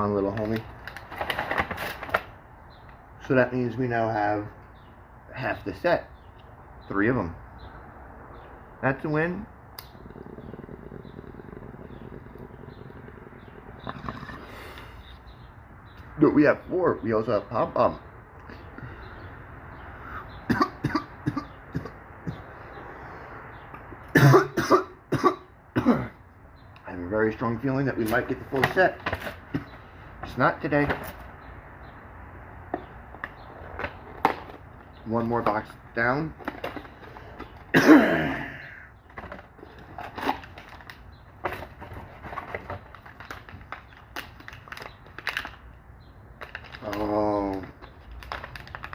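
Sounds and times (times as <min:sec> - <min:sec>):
man clearing throat: 0:20.5 - 0:22.4, 0:24.1 - 0:26.2, 0:37.7 - 0:38.8
man coughing: 0:20.5 - 0:22.4, 0:24.1 - 0:26.2, 0:37.7 - 0:38.8
box and plastic bag handled: 0:48.0 - 0:48.9.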